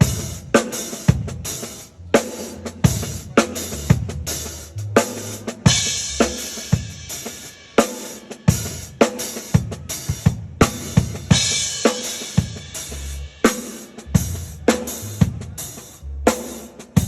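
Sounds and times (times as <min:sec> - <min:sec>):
low bass notes: 0:02.0 - 0:05.3, 0:12.9 - 0:13.3, 0:14.1 - 0:16.3
kick and snare drum beat: 0:05.4 - 0:15.6.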